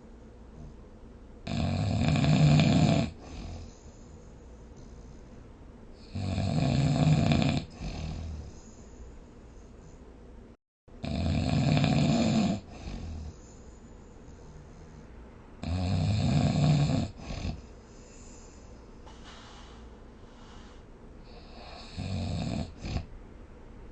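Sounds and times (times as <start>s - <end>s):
person snoring: 1.5s - 3.7s, 6.0s - 8.5s, 11.0s - 13.4s, 15.6s - 17.6s, 19.1s - 23.1s.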